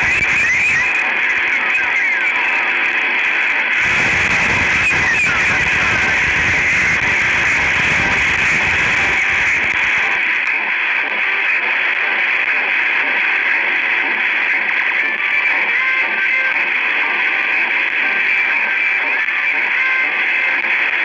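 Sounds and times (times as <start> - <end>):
crackling interference: 0.0 - 10.6
radio static hiss: 0.0 - 15.8.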